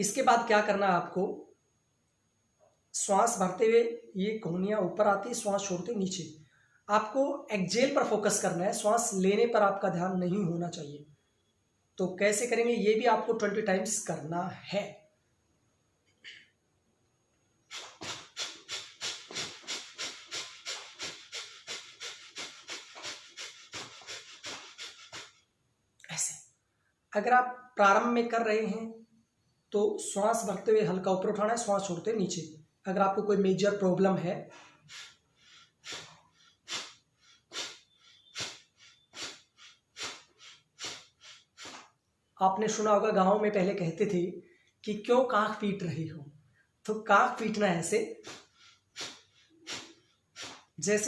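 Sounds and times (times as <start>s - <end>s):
light inhale: 6.4s - 6.9s, 17.7s - 25.5s, 34.5s - 42.1s, 48.2s - 50.8s
person breathing out forcefully: 17.7s - 25.5s, 34.5s - 42.1s, 48.2s - 50.8s.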